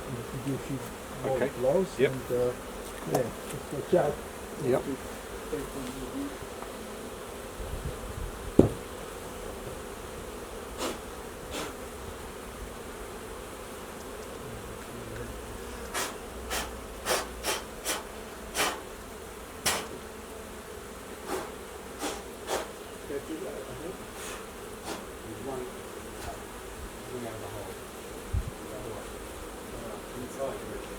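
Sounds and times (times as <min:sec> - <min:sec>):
bees buzzing: 0:00.0 - 0:30.9
sharp thump: 0:08.6 - 0:08.9, 0:19.6 - 0:20.0.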